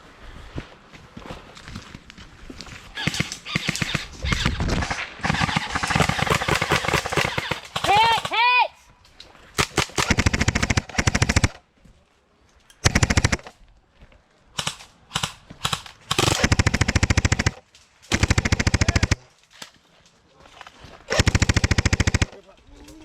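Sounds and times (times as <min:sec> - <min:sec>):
airsoft gun firing full-auto: 0:03.0 - 0:08.4, 0:09.6 - 0:11.6, 0:12.8 - 0:13.5, 0:14.6 - 0:19.2, 0:21.1 - 0:22.4.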